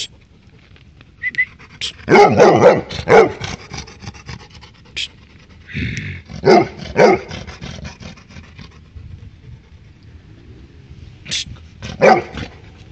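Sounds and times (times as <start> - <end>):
dog barking: 2.1 - 3.4, 6.4 - 7.3, 11.9 - 12.6.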